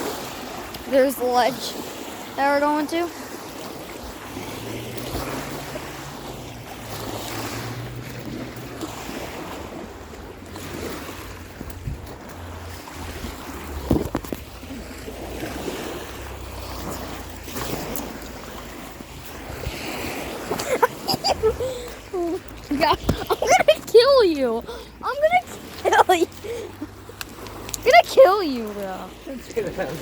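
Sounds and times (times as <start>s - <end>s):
waves washing against shore: 0.0s - 30.0s
wind rumbling on microphone: 3.1s - 23.4s.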